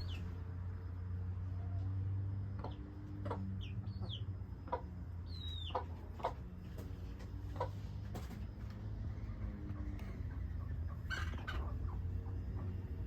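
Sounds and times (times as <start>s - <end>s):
chick peeping: 0.0s - 13.0s
hen clucking: 1.5s - 13.0s.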